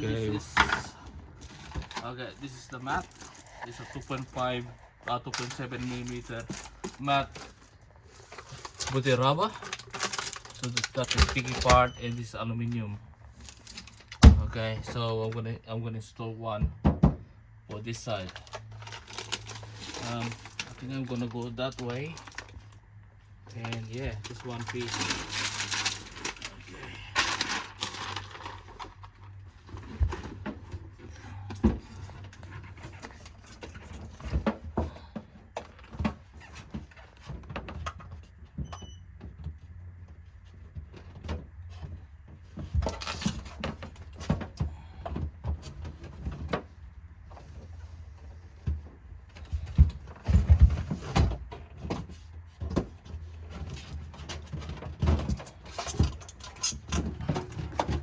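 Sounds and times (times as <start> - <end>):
rubber mat taps and rustles: 48.5 - 56.2.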